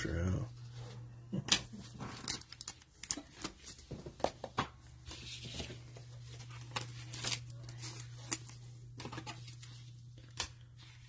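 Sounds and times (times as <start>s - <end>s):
low electrical hum: 0.0s - 11.0s
plastic wrapping crinkling: 1.5s - 4.4s, 5.1s - 11.0s.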